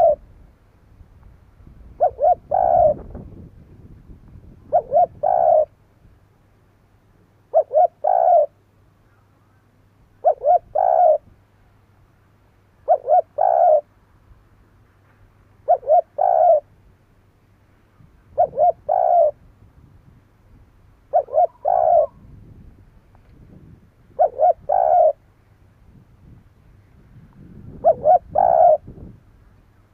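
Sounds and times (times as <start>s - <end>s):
dove cooing: 0.0s - 0.2s, 2.0s - 3.3s, 4.5s - 5.8s, 7.5s - 8.6s, 10.2s - 11.3s, 12.8s - 13.9s, 15.6s - 16.7s, 18.3s - 19.4s, 21.1s - 22.4s, 24.1s - 25.2s, 27.6s - 29.1s.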